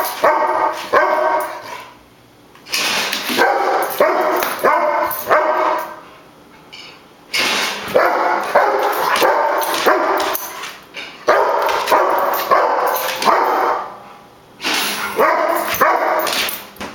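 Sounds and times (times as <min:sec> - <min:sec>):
dog barking rapidly: 0:00.0 - 0:01.6, 0:03.3 - 0:06.0, 0:07.8 - 0:10.4, 0:11.3 - 0:14.0, 0:15.0 - 0:16.4.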